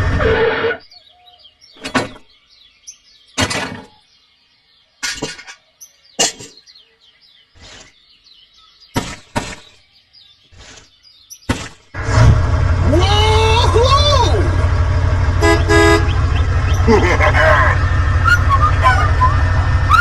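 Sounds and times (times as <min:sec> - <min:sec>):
faint bird chirping: 0:00.6 - 0:12.0, 0:15.4 - 0:20.0.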